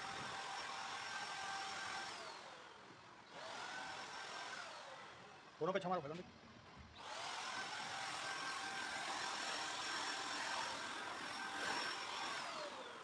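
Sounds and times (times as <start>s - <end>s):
spray gun motor whine: 0.0s - 2.7s, 7.0s - 13.0s.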